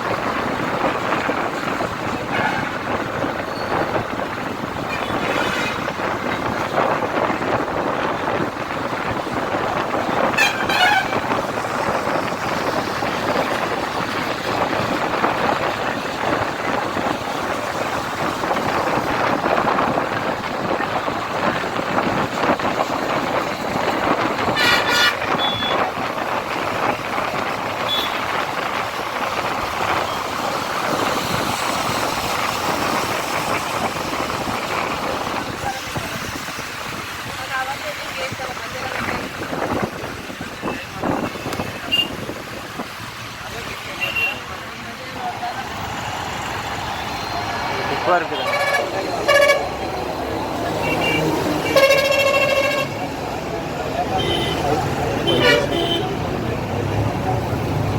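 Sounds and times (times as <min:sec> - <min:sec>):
road traffic with vehicles passing: 0:00.0 - 0:57.9
car horn honking: 0:10.3 - 0:11.3, 0:24.5 - 0:25.8, 0:48.3 - 0:49.8, 0:50.8 - 0:53.1, 0:54.1 - 0:56.2.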